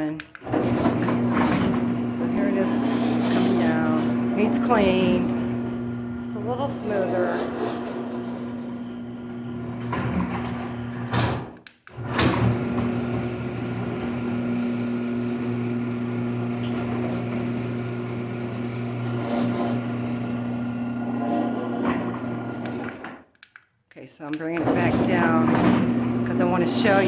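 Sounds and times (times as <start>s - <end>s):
garage door opener motor hum: 0.3s - 23.2s, 24.6s - 27.0s.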